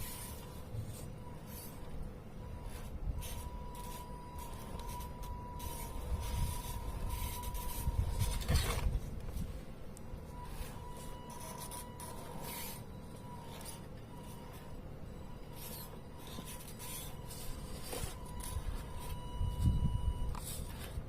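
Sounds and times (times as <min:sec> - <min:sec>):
electric motor and gear whine: 0:00.0 - 0:21.0.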